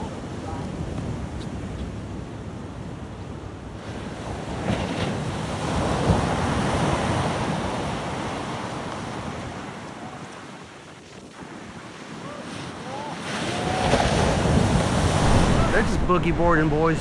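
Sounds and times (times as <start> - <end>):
wind buffeting microphone: 0.0 - 17.0
wave breaking on beach: 3.8 - 17.0.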